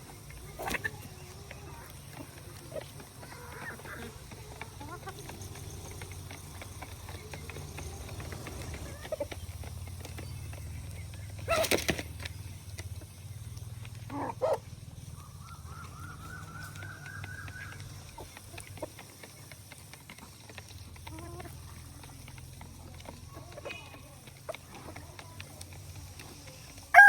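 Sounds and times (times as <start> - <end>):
wing flapping: 0.0 - 13.0
chickens calling: 0.0 - 27.0.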